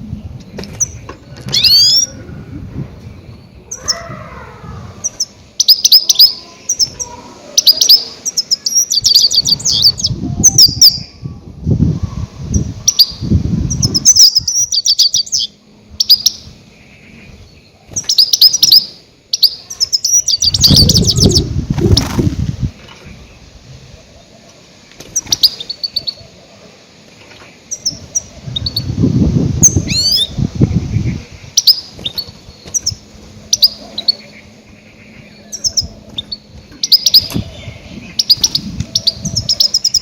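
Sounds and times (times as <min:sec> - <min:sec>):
goldfinch twittering calls: 0:31.0 - 0:40.0.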